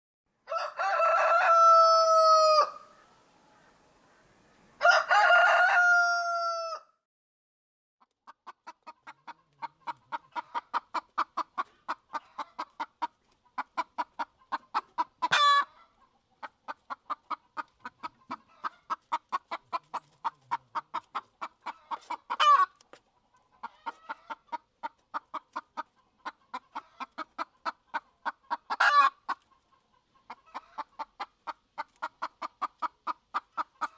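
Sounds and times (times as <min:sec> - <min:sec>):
rooster crowing: 0:00.4 - 0:02.9, 0:04.8 - 0:06.9
chicken clucking rapidly: 0:08.0 - 0:33.9
chicken squawk: 0:13.6 - 0:22.8, 0:23.6 - 0:29.4.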